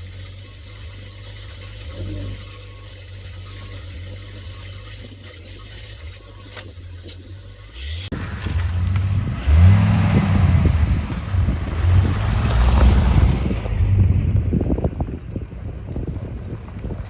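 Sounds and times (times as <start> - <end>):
engine running low: 0.0 - 17.0
engine revving: 7.7 - 17.0.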